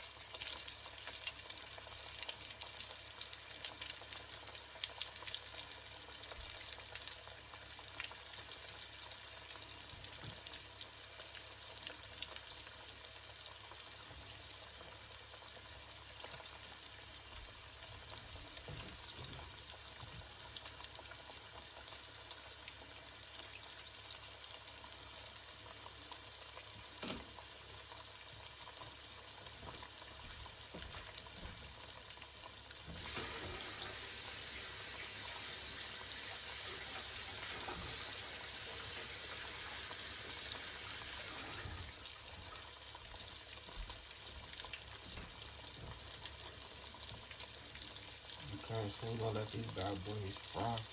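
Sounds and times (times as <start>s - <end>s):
fish and shrimp sizzling in oil: 0.0s - 50.9s
bright loud hiss: 32.9s - 41.8s.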